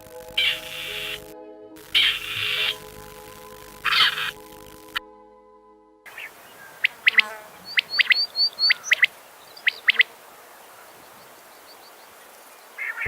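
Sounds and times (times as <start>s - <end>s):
falling whistled bird calls: 0.4s - 1.2s, 2.0s - 2.8s, 3.8s - 4.4s, 6.1s - 13.0s
short rising bird notes: 6.1s - 13.0s.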